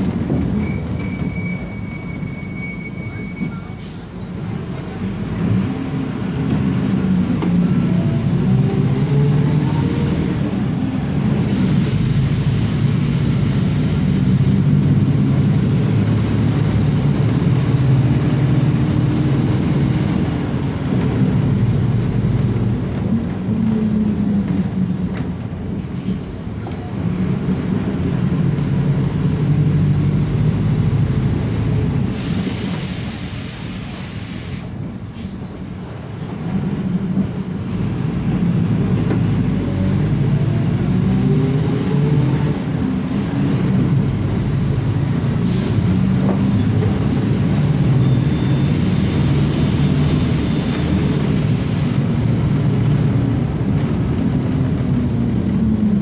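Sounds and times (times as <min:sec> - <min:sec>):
bus engine drone: 0:00.0 - 0:56.0
hiss: 0:11.4 - 0:14.7, 0:32.1 - 0:35.4.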